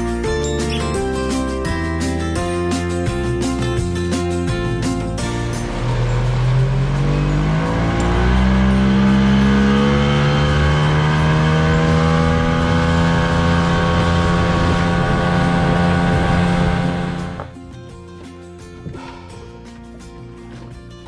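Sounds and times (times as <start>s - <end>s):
outboard motor rising in pitch: 3.4s - 17.6s.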